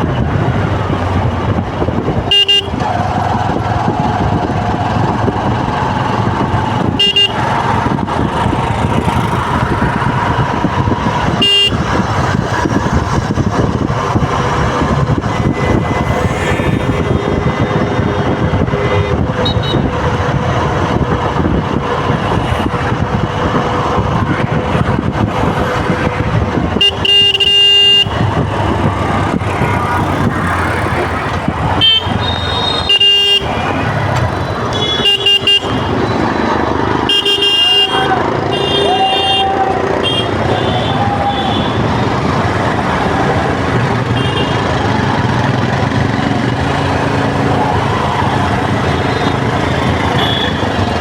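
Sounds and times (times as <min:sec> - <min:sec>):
road vehicles running: 0:00.0 - 0:51.0
car horns honking: 0:02.2 - 0:03.0, 0:06.6 - 0:07.9, 0:11.1 - 0:12.4, 0:14.6 - 0:20.1, 0:26.5 - 0:29.4, 0:31.4 - 0:43.0, 0:43.6 - 0:51.0.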